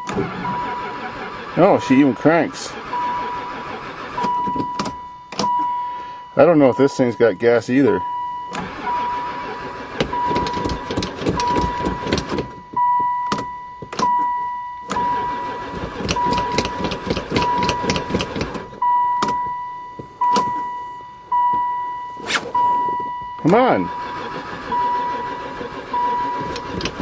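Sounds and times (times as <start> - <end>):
starter cranking engine: 0.0 - 5.6, 8.5 - 12.6, 14.9 - 19.4, 23.0 - 27.0
high steady beep: 4.2 - 9.2, 11.4 - 15.5, 18.7 - 24.1.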